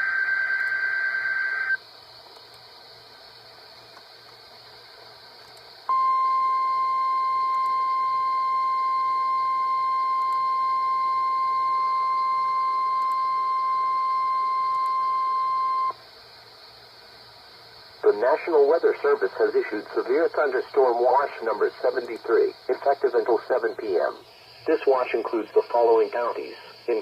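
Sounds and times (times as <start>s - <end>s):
loud steady high alarm tone: 0.0s - 1.8s, 5.9s - 16.0s
faint radio hiss: 0.0s - 27.0s.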